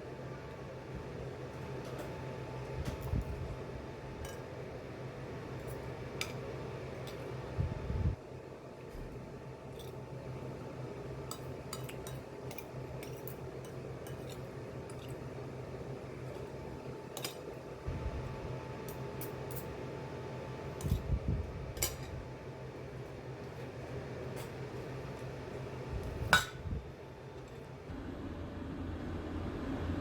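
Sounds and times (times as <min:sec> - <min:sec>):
steady low hum: 0:00.0 - 0:30.0
dishes and utensils clinking: 0:11.3 - 0:15.2, 0:17.1 - 0:17.5, 0:21.8 - 0:22.2.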